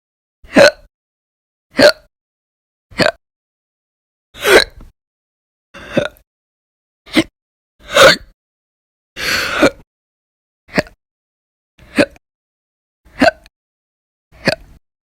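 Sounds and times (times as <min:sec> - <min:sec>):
woman hiccupping: 0:00.5 - 0:00.9, 0:01.8 - 0:02.1, 0:02.9 - 0:03.2, 0:04.4 - 0:04.9, 0:05.8 - 0:06.2, 0:10.7 - 0:11.0, 0:11.8 - 0:12.2, 0:13.1 - 0:13.5, 0:14.4 - 0:14.8.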